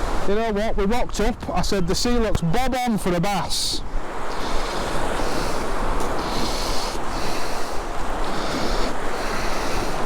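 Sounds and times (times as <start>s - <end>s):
surf on a beach: 0.0s - 10.0s
wind on microphone: 3.7s - 10.0s.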